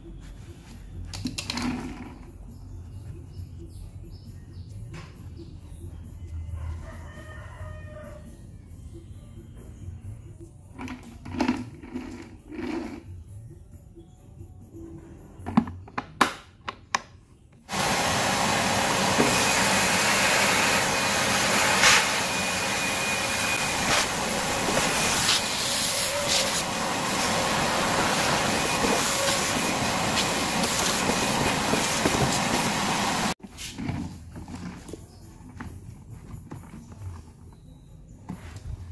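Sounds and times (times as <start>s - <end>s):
vacuum cleaner running: 17.7s - 33.4s.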